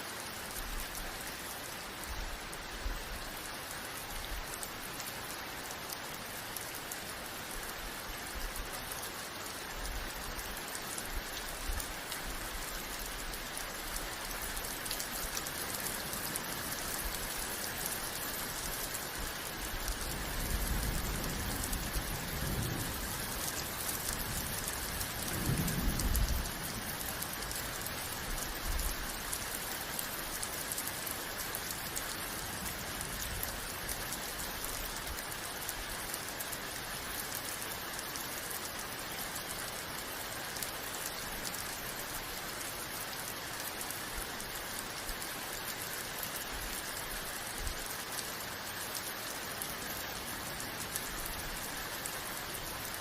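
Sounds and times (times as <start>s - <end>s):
heavy rain falling: 0.0s - 53.0s
low rumble of thunder: 20.0s - 29.3s.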